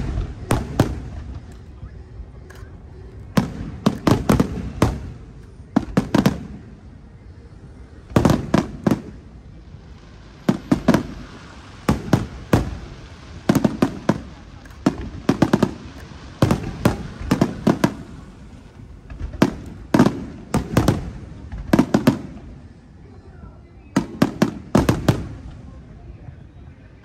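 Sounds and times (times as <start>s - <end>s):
firework shells bursting: 2.4s - 6.6s, 10.4s - 22.4s.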